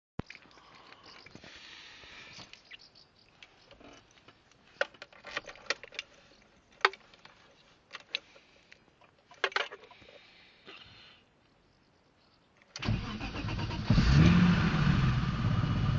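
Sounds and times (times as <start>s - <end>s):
light rustle: 3.3s - 10.9s
handling clicks and knocks: 3.4s - 10.1s.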